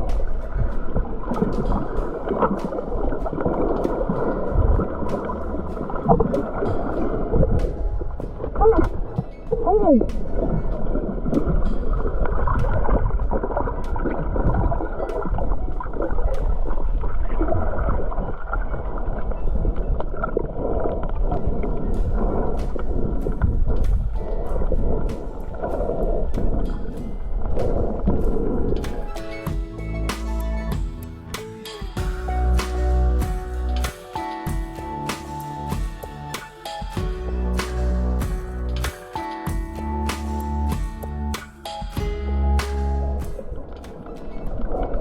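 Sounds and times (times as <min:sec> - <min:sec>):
muffled underwater water noise: 0:00.0 - 0:29.4, 0:43.2 - 0:45.0.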